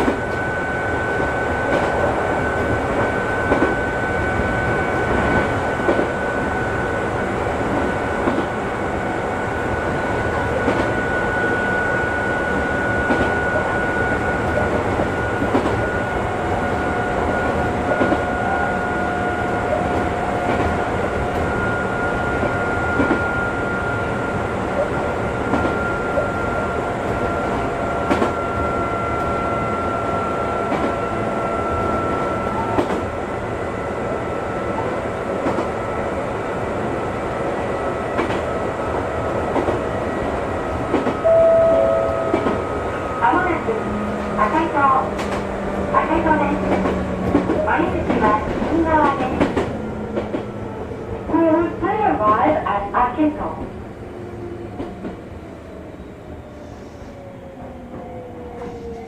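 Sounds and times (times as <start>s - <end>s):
train wheels rumbling on rail: 0.0s - 59.0s
rail-joint clicks: 14.5s - 15.8s, 19.8s - 21.5s, 28.1s - 28.4s, 40.9s - 42.6s, 45.1s - 45.6s, 46.6s - 50.5s.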